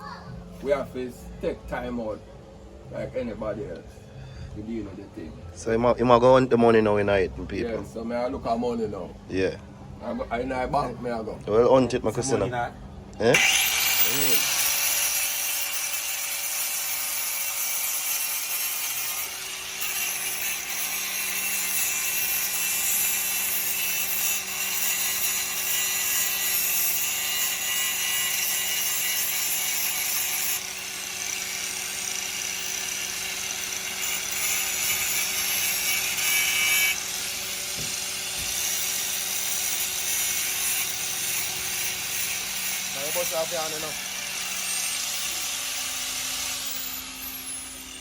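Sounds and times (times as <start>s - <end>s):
power tool grinding under load: 13.3s - 48.0s.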